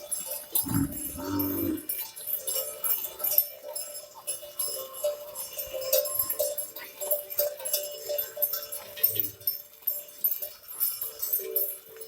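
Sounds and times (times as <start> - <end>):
cattle bells clanking: 0.0 - 12.0.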